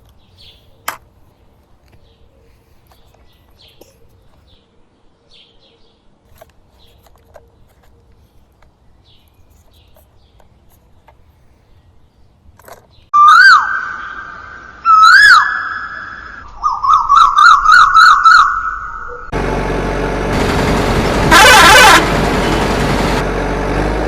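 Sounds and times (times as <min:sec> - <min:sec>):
warbling siren-like tone: 0:13.2 - 0:19.3
loud electronic burst: 0:19.3 - 0:23.2
recorded engine running sound: 0:19.3 - 0:24.0.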